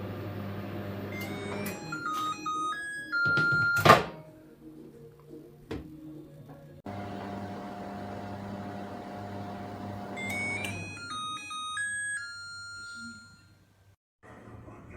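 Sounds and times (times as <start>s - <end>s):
microwave oven humming: 0.0s - 1.9s, 6.9s - 11.1s.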